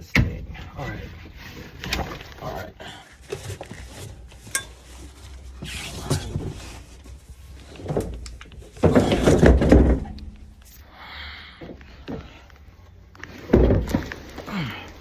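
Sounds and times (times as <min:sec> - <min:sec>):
rattling and scraping: 0:00.0 - 0:10.8, 0:11.6 - 0:15.0
metal parts knocking and clattering: 0:07.8 - 0:10.7.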